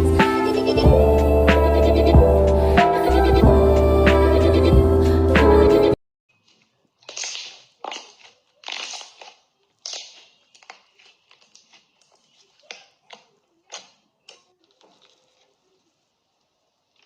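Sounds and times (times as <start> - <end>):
wet squelches of slime: 6.4 - 17.0.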